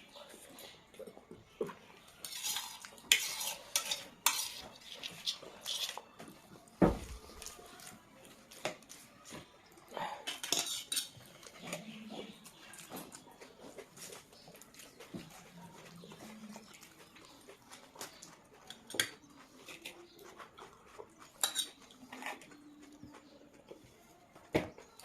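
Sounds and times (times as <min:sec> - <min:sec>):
chewing: 0:00.1 - 0:25.0
cutlery clicking on a plate: 0:10.2 - 0:11.6, 0:21.4 - 0:22.4.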